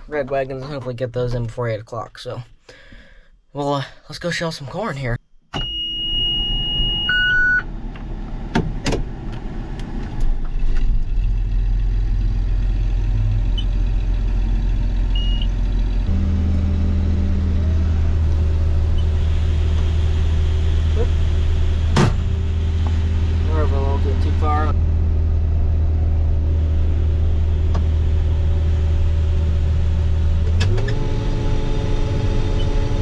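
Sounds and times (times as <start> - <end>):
combine engine drone: 7.6 - 33.0.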